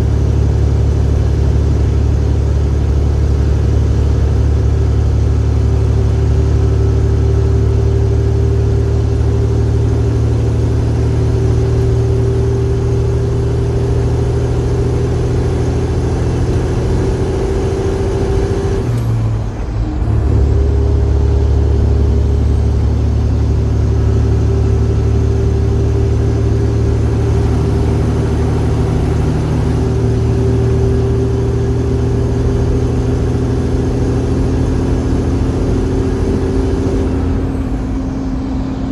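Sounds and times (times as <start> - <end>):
diesel engine pulling under load: 0.0 - 38.9.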